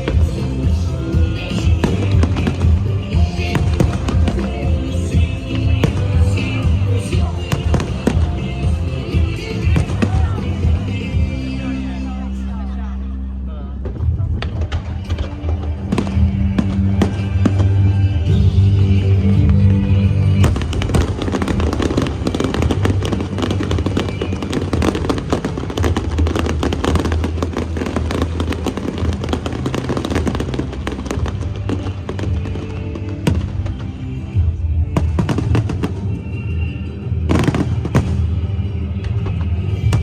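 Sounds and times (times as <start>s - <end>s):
fireworks crackling and popping: 0.0s - 11.7s, 13.9s - 40.0s
loud music: 0.0s - 40.0s.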